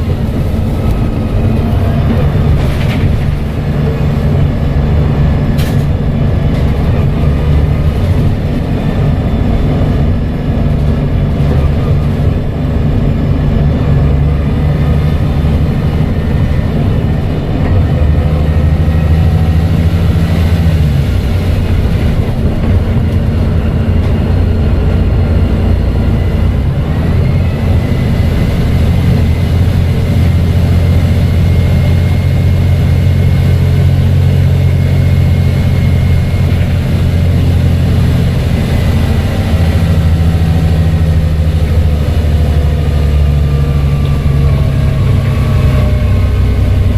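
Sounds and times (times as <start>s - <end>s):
bus diesel engine running: 0.0s - 46.9s.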